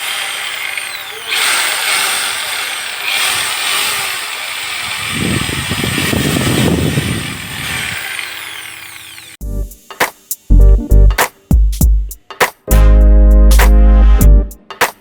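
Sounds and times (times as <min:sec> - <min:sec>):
grinding sound: 0:00.0 - 0:09.4
power tool motor whining: 0:00.0 - 0:09.4
music: 0:09.4 - 0:15.0.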